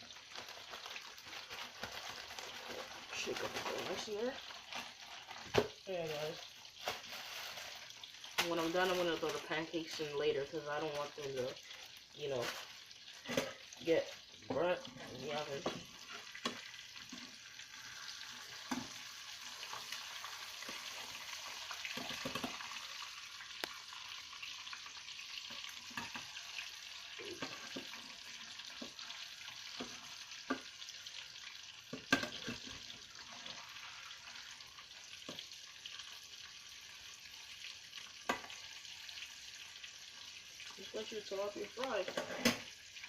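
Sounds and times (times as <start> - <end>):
fish frying in oil: 0.0 - 43.0.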